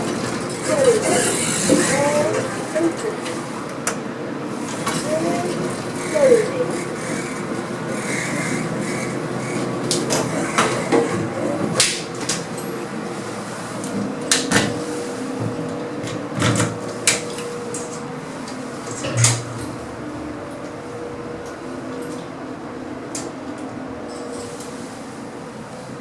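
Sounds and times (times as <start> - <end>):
steady hum: 0.0 - 11.9
lift doors clunking and clicking: 18.5 - 20.8.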